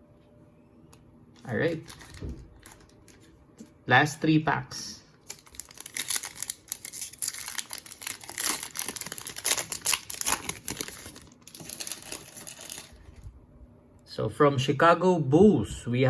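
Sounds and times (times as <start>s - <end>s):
foil wrapper crinkling and tearing: 1.6s - 3.2s, 5.2s - 13.2s.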